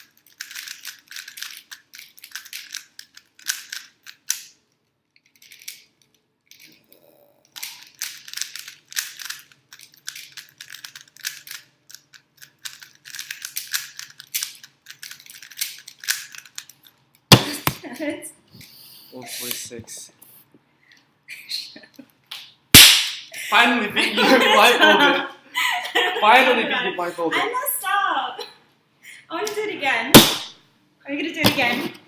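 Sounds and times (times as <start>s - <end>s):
puzzle cube clicking as turned: 0.0s - 4.6s, 5.2s - 5.9s, 7.4s - 16.8s.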